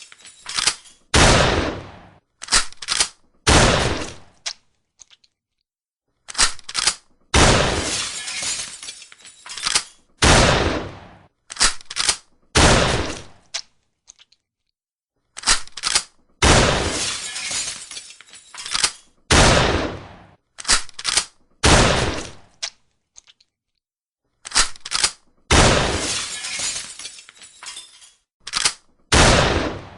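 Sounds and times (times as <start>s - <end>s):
loud shotgun shots: 1.1s - 2.2s, 3.5s - 4.3s, 7.4s - 8.4s, 10.2s - 11.3s, 12.6s - 13.4s, 16.4s - 17.4s, 19.3s - 20.4s, 21.6s - 22.4s, 25.5s - 26.3s, 29.1s - 29.9s.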